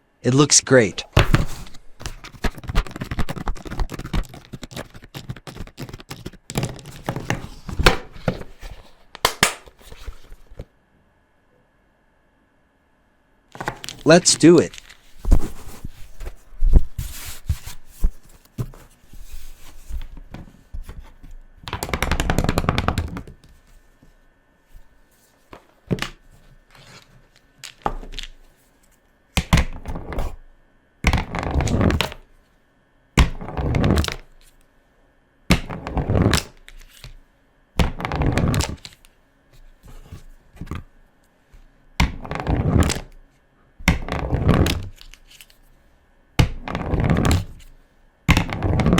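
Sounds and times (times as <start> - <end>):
markers scratching on paper: 2.0 - 6.4.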